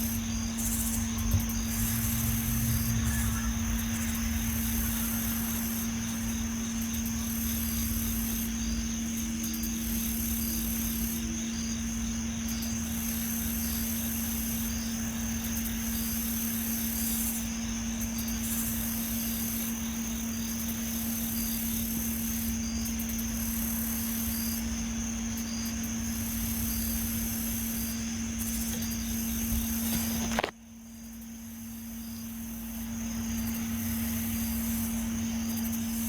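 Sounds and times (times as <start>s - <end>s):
low hum: 0.0s - 8.2s
insect buzzing: 0.0s - 36.0s
insects chirping: 0.0s - 36.0s
high-pitched whine: 0.1s - 8.4s.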